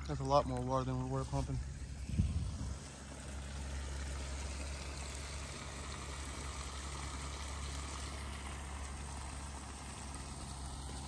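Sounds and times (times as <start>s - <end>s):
low rumble: 0.0s - 6.9s
water pouring from a pipe: 0.0s - 11.0s.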